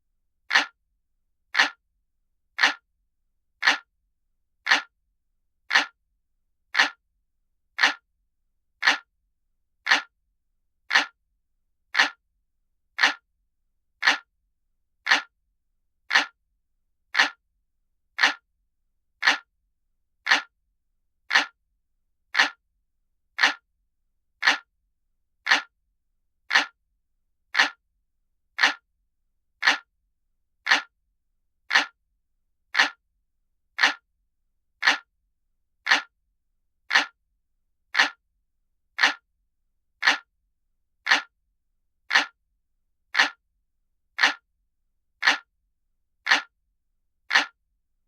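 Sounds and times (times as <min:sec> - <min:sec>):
clock ticking: 0:00.5 - 0:00.8, 0:01.6 - 0:01.8, 0:02.6 - 0:02.8, 0:03.6 - 0:03.9, 0:04.7 - 0:04.9, 0:05.7 - 0:06.0, 0:06.8 - 0:07.0, 0:07.8 - 0:08.0, 0:08.8 - 0:09.1, 0:09.9 - 0:10.1, 0:10.9 - 0:11.2, 0:12.0 - 0:12.2, 0:13.0 - 0:13.2, 0:14.0 - 0:14.3, 0:15.1 - 0:15.3, 0:16.1 - 0:16.4, 0:17.2 - 0:17.4, 0:18.2 - 0:18.4, 0:19.2 - 0:19.5, 0:20.3 - 0:20.5, 0:21.3 - 0:21.6, 0:22.4 - 0:22.6, 0:23.4 - 0:23.6, 0:24.4 - 0:24.7, 0:25.5 - 0:25.7, 0:26.5 - 0:26.8, 0:27.6 - 0:27.8, 0:28.6 - 0:28.8, 0:29.6 - 0:29.9, 0:30.7 - 0:30.9, 0:31.7 - 0:32.0, 0:32.8 - 0:33.0, 0:33.8 - 0:34.0, 0:34.8 - 0:35.1, 0:35.8 - 0:36.1, 0:36.9 - 0:37.2, 0:37.9 - 0:38.2, 0:39.0 - 0:39.2, 0:40.0 - 0:40.3, 0:41.0 - 0:41.3, 0:42.1 - 0:42.4, 0:43.1 - 0:43.4, 0:44.2 - 0:44.4, 0:45.2 - 0:45.5, 0:46.2 - 0:46.5, 0:47.3 - 0:47.6.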